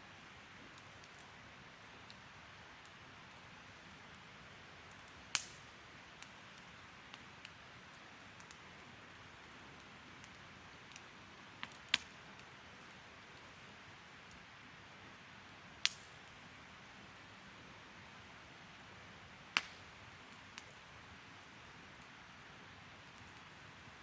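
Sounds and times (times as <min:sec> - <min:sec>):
campfire hissing and crackling: 0:00.0 - 0:24.0
sharp fire pops: 0:05.3 - 0:05.6, 0:15.8 - 0:16.2, 0:19.6 - 0:19.9.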